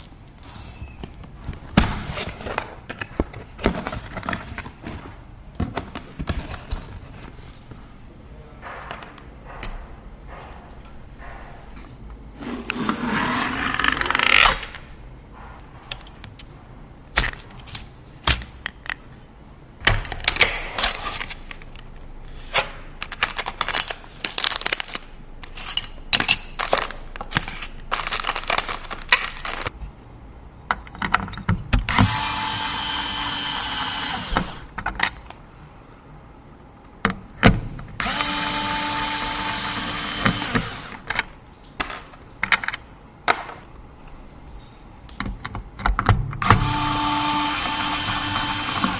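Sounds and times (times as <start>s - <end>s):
electric screwdriver running: 31.9s - 34.6s, 38.0s - 41.0s, 46.4s - 48.9s.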